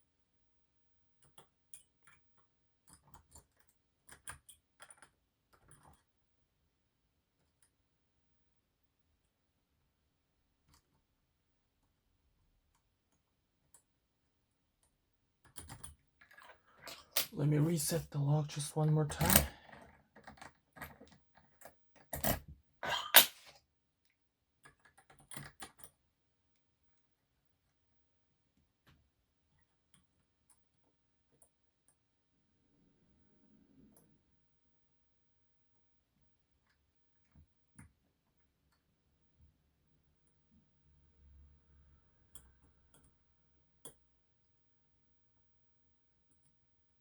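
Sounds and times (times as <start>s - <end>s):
lock pick clicking and scraping: 19.1s - 22.5s
metal lock clicks and knocks: 19.2s - 19.6s.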